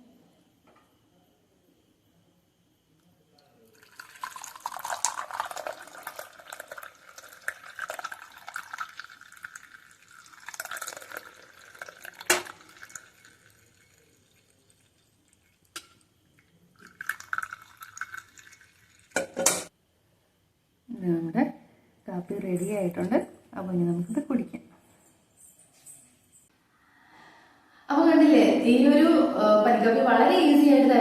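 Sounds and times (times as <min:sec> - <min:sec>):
liquid pouring and splashing: 0:03.6 - 0:19.7.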